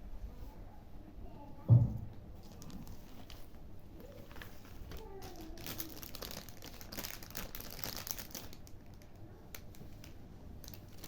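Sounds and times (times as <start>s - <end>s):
packaging crinkling and rustling: 2.4s - 11.0s.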